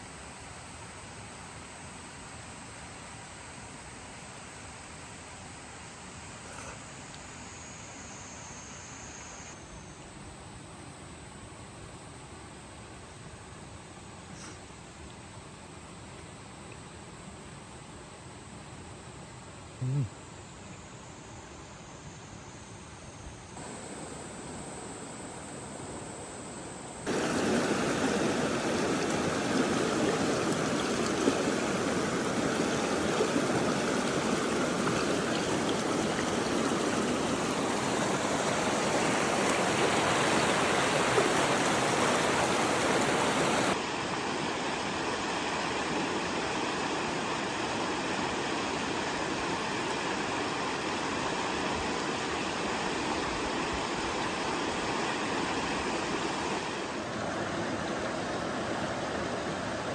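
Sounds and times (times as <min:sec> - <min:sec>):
rushing water: 0:23.6 - 0:59.9.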